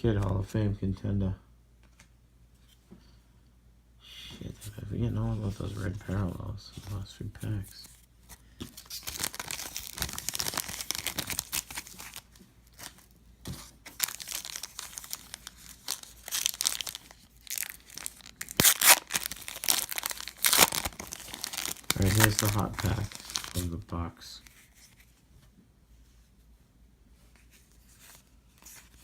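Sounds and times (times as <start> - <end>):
foil wrapper crinkling and tearing: 8.7 - 13.1, 13.9 - 23.9.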